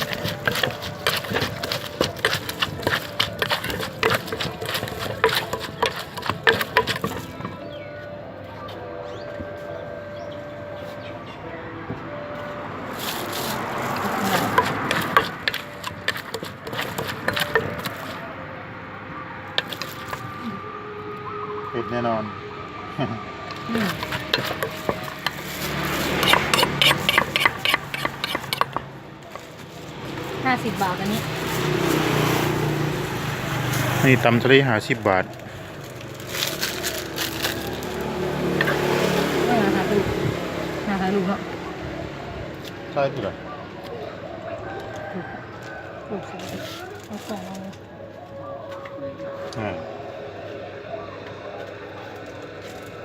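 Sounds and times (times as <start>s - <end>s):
stirring rustle: 0.0s - 7.6s, 12.9s - 18.3s, 19.5s - 20.4s, 23.5s - 32.0s, 34.8s - 39.1s
wooden pestle pounding in mortar: 0.0s - 7.6s, 14.2s - 18.2s, 23.6s - 29.5s
ingredients mashing and rattling: 0.0s - 7.7s, 13.0s - 18.3s, 19.6s - 20.5s, 23.5s - 32.6s, 33.8s - 39.5s.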